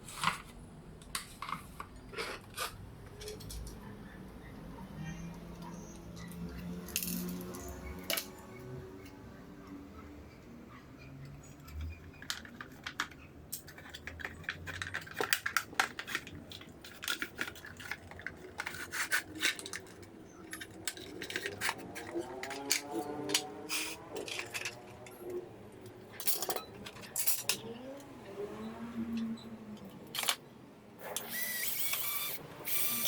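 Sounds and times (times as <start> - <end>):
small hard parts clicking: 11.2 - 28.1.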